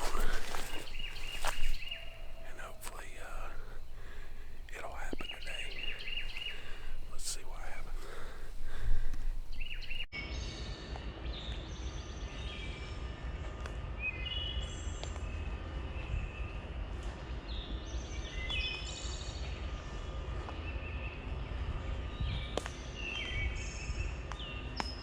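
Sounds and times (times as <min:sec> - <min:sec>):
songbirds singing: 0:00.0 - 0:10.1.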